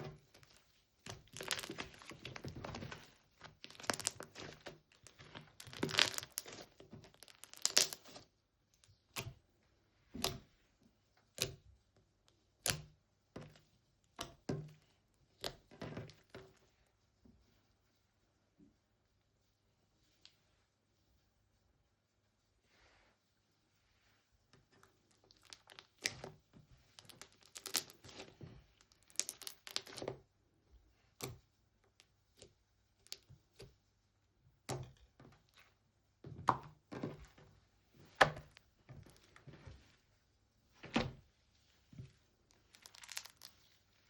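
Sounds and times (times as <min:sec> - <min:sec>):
slime popping and crackling: 0:00.0 - 0:08.2, 0:25.2 - 0:26.3, 0:27.0 - 0:30.1, 0:42.6 - 0:43.6.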